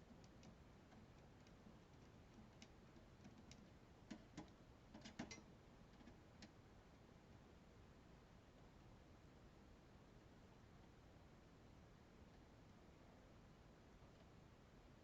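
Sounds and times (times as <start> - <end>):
faint light clicks and taps: 0.1 - 6.6.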